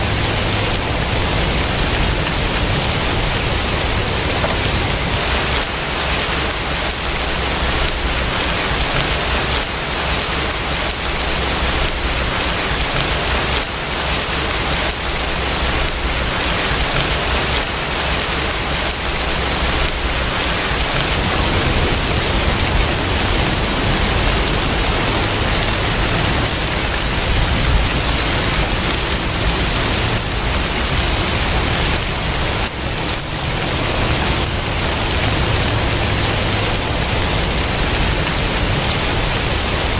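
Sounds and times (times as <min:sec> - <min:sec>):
steady rain falling: 0:00.0 - 0:39.9
low rumble: 0:19.5 - 0:39.9.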